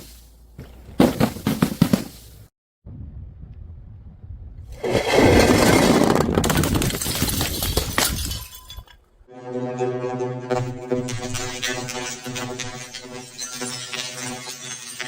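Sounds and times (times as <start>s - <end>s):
glass bottle smashing: 5.5s - 9.0s
glass shards clinking and scattering: 6.8s - 9.0s
steady pitched musical tone: 9.3s - 14.4s.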